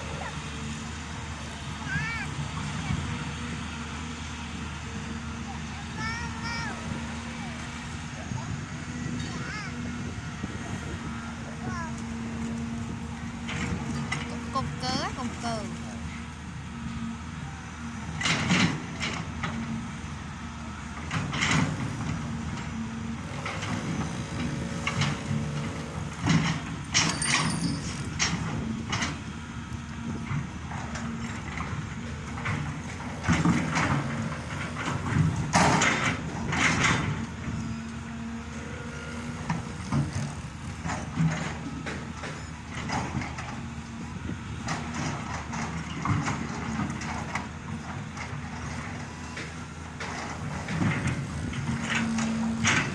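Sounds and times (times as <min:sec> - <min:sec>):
diesel engine drone: 0:00.0 - 0:52.9
metal clanks and knocks: 0:21.0 - 0:22.8, 0:23.4 - 0:29.2, 0:30.1 - 0:37.6.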